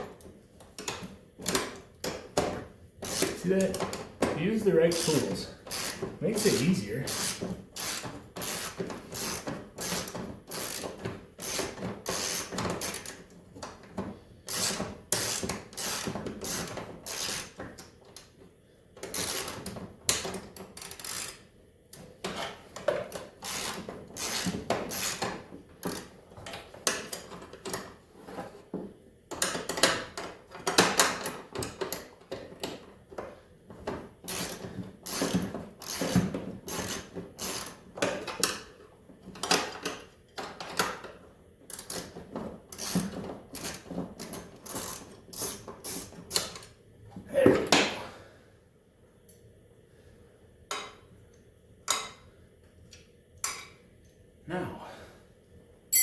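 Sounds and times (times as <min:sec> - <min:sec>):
ratchet wrench clicking: 0:03.0 - 0:03.4, 0:05.7 - 0:06.0, 0:07.1 - 0:13.2, 0:14.5 - 0:17.5, 0:23.4 - 0:25.2.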